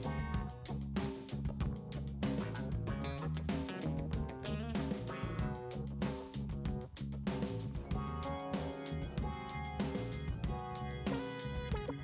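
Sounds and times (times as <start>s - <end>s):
drum kit beat: 0.0s - 12.0s
guitar: 2.4s - 5.7s, 7.8s - 12.0s.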